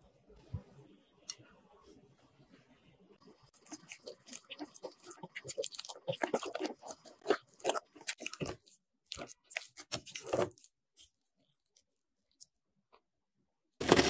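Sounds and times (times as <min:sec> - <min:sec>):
food crunching and crackling: 0:03.2 - 0:12.6, 0:13.8 - 0:14.0.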